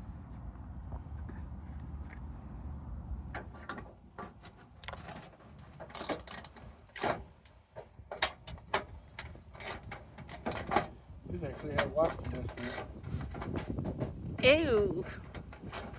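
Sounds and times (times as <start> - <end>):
metal parts knocking and rattling: 3.4 - 14.4, 15.1 - 15.9.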